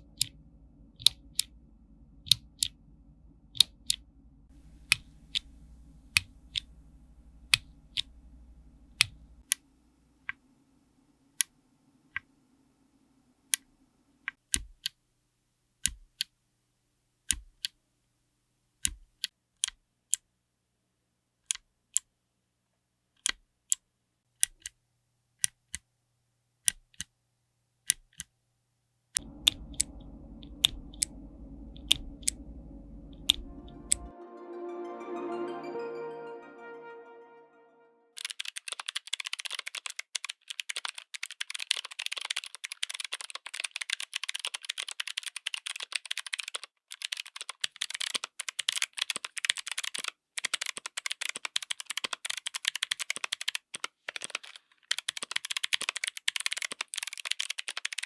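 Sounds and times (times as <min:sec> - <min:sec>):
mechanical keyboard clicks: 0:04.6 - 0:09.6, 0:29.2 - 0:34.1, 0:47.0 - 0:58.0.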